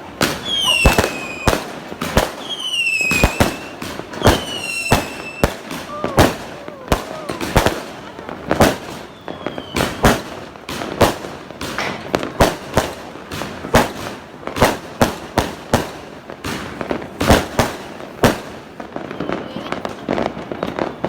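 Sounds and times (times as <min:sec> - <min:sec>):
fireworks bangs: 0:00.0 - 0:21.0
faint firework whistle: 0:00.3 - 0:01.7, 0:02.4 - 0:07.7, 0:08.7 - 0:10.2.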